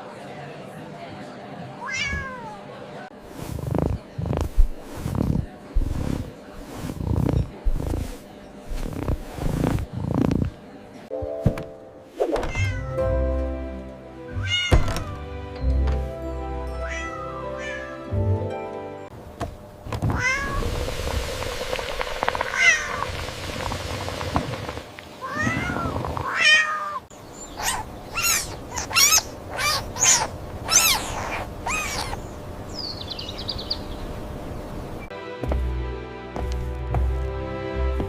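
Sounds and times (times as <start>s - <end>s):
cat meowing: 1.8s - 2.6s, 12.5s - 13.0s, 14.3s - 15.2s, 16.8s - 18.0s, 20.1s - 20.6s, 25.2s - 32.2s.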